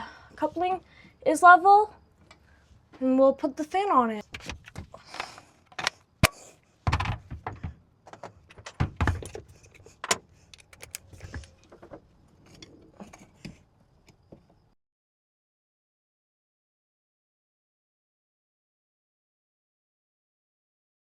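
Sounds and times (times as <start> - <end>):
metal hardware clinking and rattling: 6.9 - 13.6.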